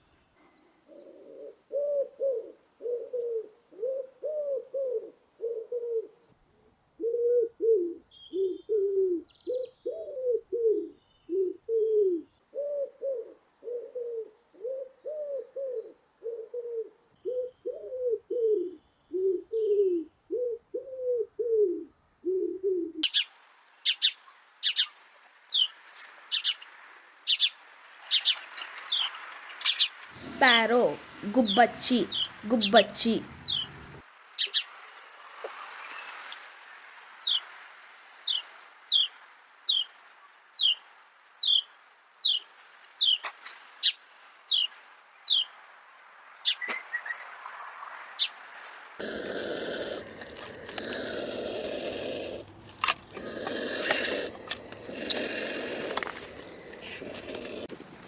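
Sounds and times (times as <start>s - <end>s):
pigeon cooing: 1.0s - 6.2s, 30.3s - 34.0s, 49.0s - 52.5s, 53.2s - 57.8s
high-pitched bird chirps: 30.4s - 34.0s.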